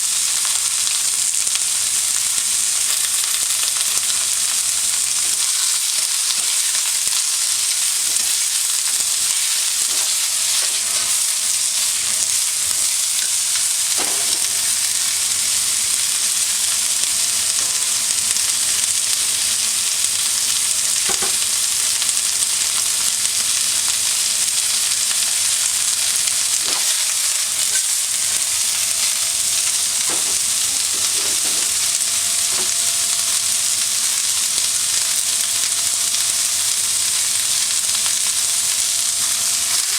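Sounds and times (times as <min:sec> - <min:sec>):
food sizzling in a wok: 0:00.0 - 0:39.9
utensil knocking against pan: 0:30.1 - 0:31.7.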